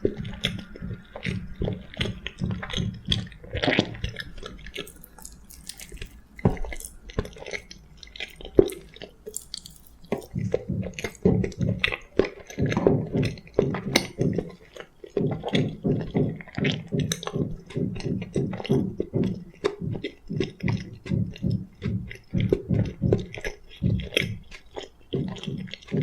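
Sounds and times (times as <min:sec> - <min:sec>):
chewing soft food: 0:00.0 - 0:26.0.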